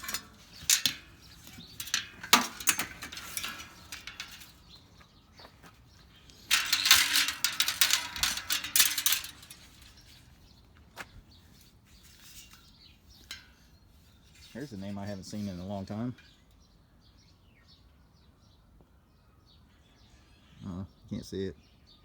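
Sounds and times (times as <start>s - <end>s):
hard objects clinking and rattling: 0.0s - 10.3s.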